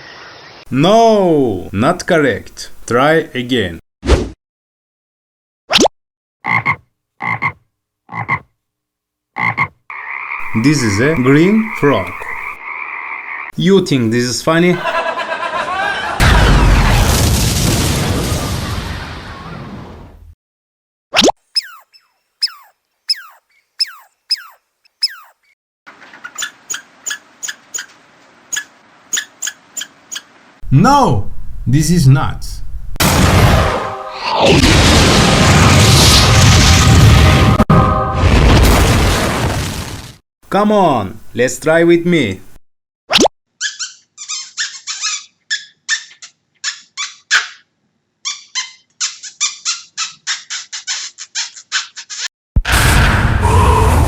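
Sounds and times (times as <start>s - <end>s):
small animal squeaking: 21.5s - 25.5s, 26.2s - 27.9s, 28.5s - 30.3s, 43.6s - 52.3s
falling chirp tones: 21.5s - 25.6s.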